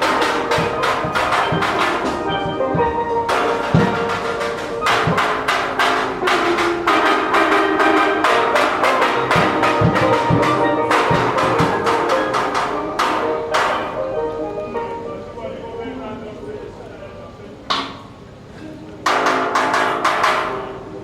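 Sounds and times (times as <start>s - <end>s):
sharp percussion hits: 0.0s - 14.4s, 19.0s - 21.0s
steel pans playing chords: 0.0s - 21.0s.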